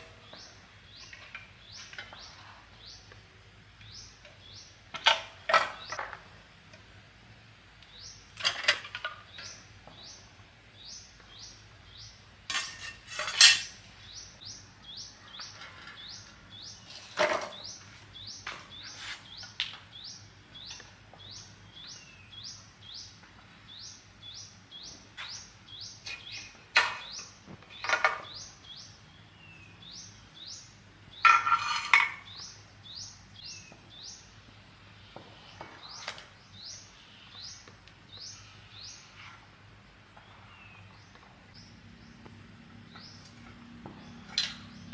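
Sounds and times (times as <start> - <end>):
metal tools clanking: 12.5 - 13.8, 31.2 - 32.4.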